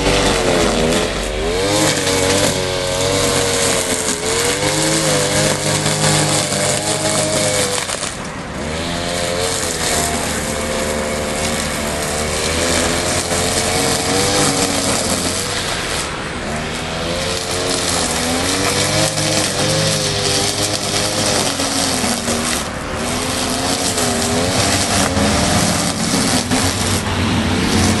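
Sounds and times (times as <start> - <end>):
brush cutter engine revving: 0.0 - 28.0.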